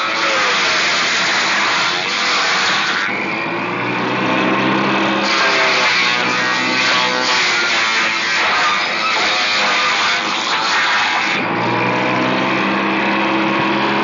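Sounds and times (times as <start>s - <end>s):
table saw shredding cardboard: 0.0s - 14.0s.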